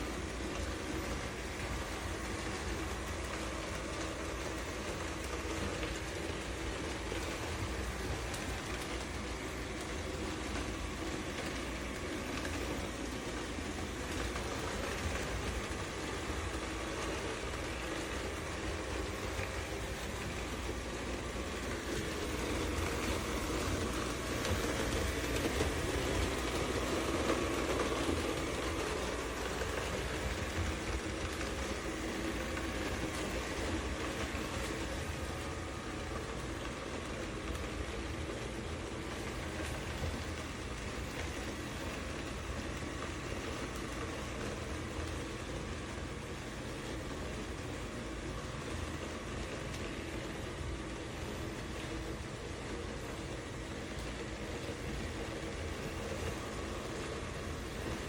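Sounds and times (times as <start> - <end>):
robot vacuum whirring: 0.1 - 45.3.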